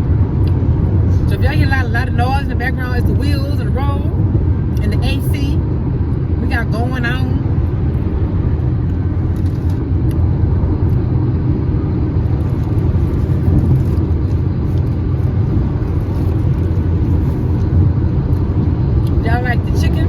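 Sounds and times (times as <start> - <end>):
air conditioning blowing: 0.0 - 20.0
tyres on road: 0.0 - 20.0.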